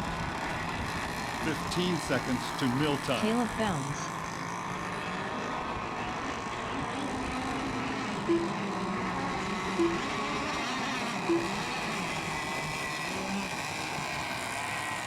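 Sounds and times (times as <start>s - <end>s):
model boat engines buzzing: 0.0s - 15.0s
short beeps: 8.3s - 8.7s, 9.8s - 10.2s, 11.3s - 11.8s.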